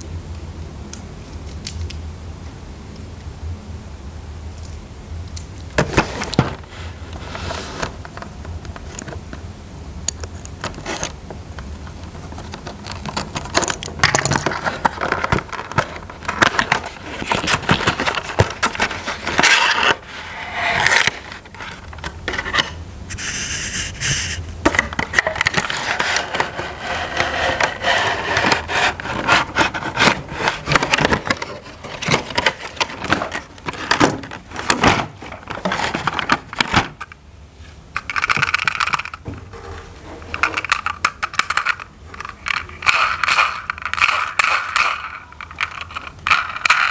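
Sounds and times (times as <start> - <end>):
toy packaging rustling: 11.8 - 22.7, 24.8 - 37.2, 38.0 - 39.3, 40.2 - 46.9.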